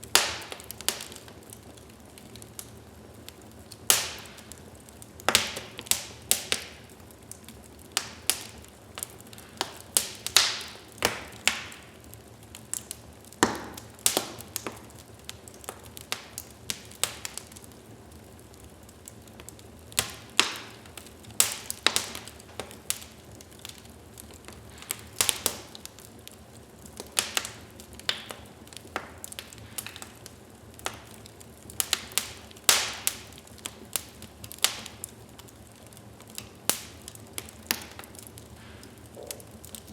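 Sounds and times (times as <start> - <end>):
wood fire crackling and popping: 0.0 - 39.9.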